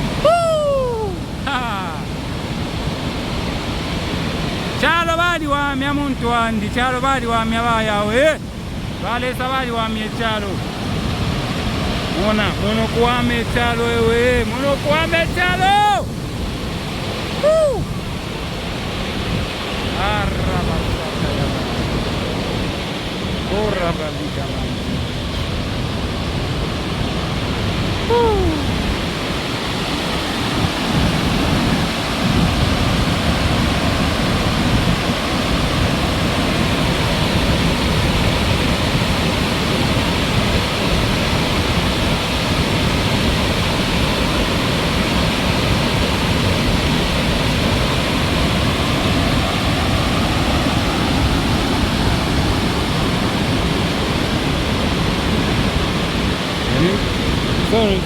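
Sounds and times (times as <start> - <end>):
waterfall roaring: 0.0 - 58.0.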